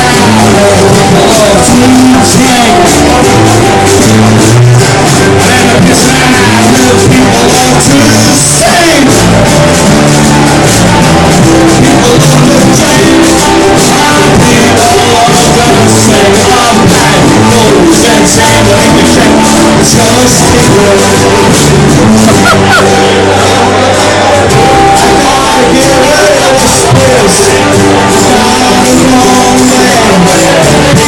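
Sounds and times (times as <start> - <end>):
band playing punk-folk music: 0.0 - 31.0
person singing: 0.0 - 31.0.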